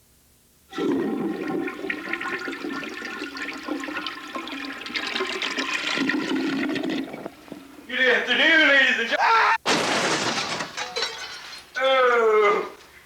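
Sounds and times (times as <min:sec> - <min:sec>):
toilet flushing: 0:00.7 - 0:07.9.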